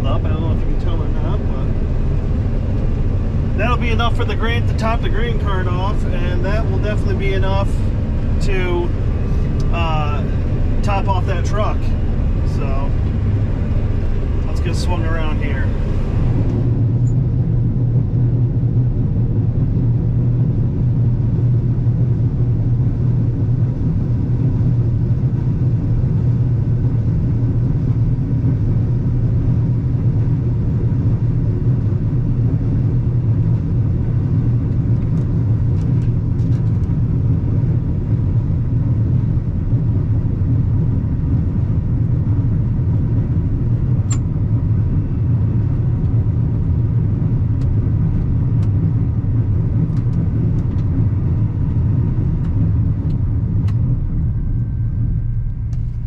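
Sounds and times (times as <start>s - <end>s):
combine harvester droning: 0.0s - 19.9s, 24.1s - 56.0s
brief click: 44.1s - 44.3s.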